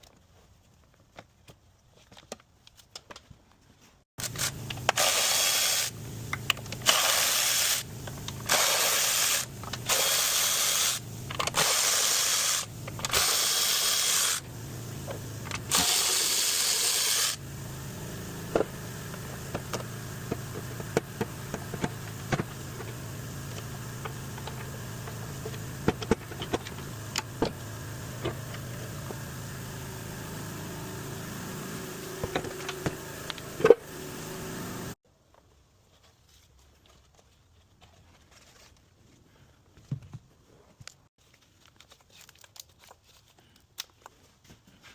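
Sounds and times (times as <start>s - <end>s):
power tool bursts: 4.2s - 35.0s
steady low hum: 4.2s - 35.0s.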